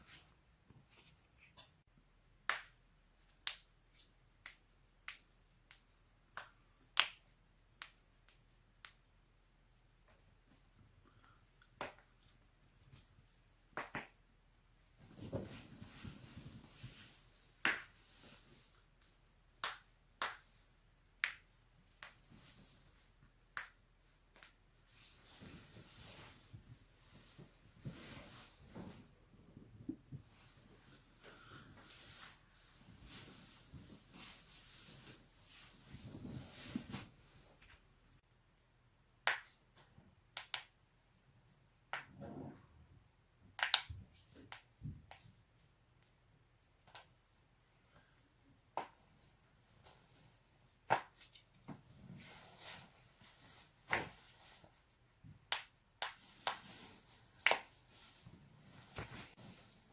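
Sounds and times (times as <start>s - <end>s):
soft rustle: 14.7s - 19.4s, 21.8s - 23.2s, 24.0s - 38.2s, 49.0s - 55.1s, 56.1s - 59.9s.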